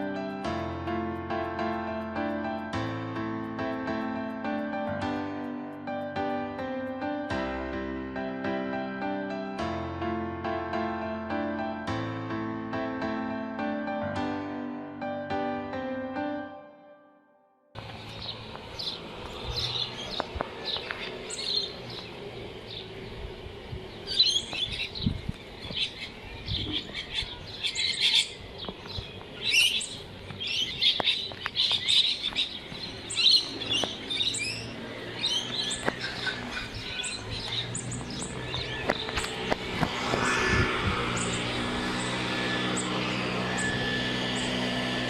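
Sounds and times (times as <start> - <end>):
small birds chirping: 17.8 - 45.0.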